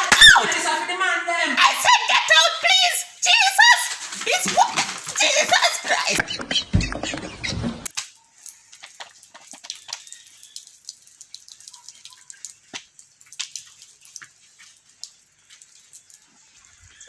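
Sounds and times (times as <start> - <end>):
small clicks and taps: 7.9 - 16.2.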